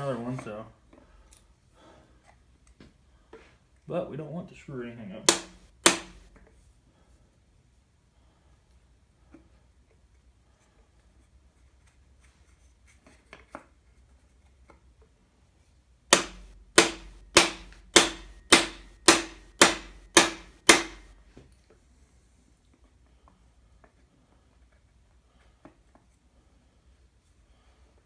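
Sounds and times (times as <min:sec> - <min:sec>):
ringing hammer blows on metal: 0:05.3 - 0:06.3, 0:16.1 - 0:21.1.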